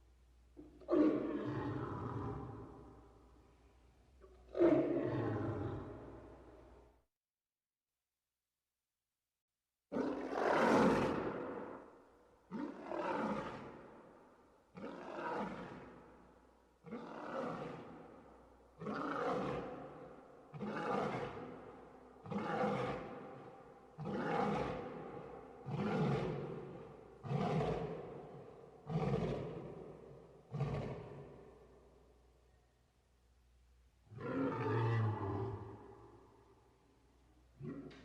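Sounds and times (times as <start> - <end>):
lion roaring: 0.8 - 2.8, 18.8 - 21.5, 22.2 - 23.3, 24.0 - 31.5, 34.1 - 36.0.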